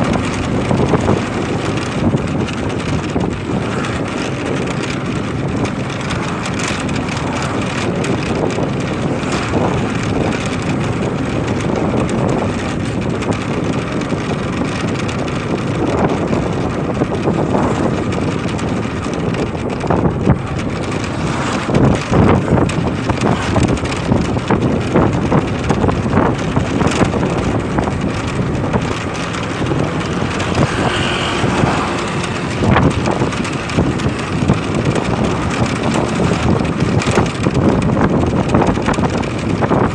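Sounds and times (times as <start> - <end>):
motorcycle engine and tyres: 0.0 - 39.9
wind rushing over microphone: 0.0 - 39.9.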